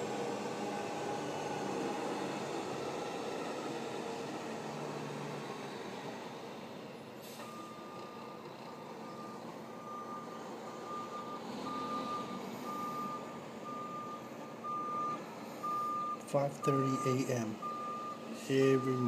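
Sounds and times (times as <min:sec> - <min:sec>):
truck reversing alarm beeping: 0:07.3 - 0:19.0.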